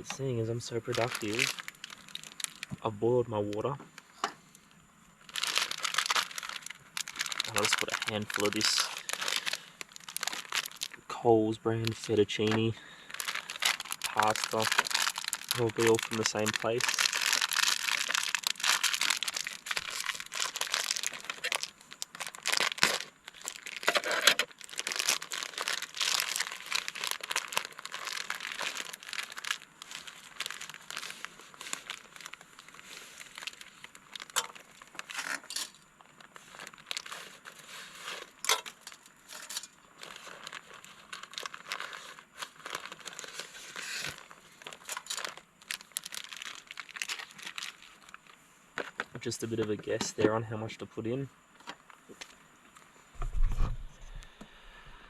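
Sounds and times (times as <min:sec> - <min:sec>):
plastic packet crinkling: 0:00.0 - 0:03.7, 0:05.2 - 0:50.0.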